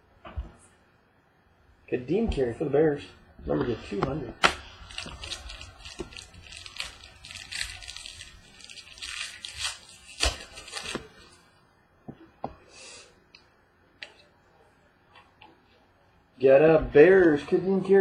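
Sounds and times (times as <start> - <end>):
cards and plastic packaging rustling: 3.6 - 11.4.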